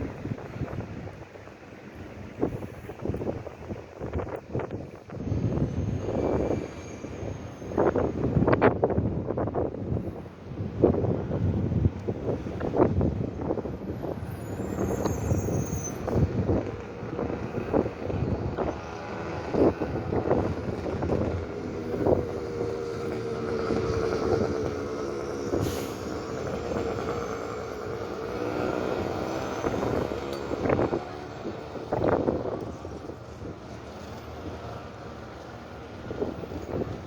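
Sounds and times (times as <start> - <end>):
wind buffeting microphone: 0.0 - 37.0.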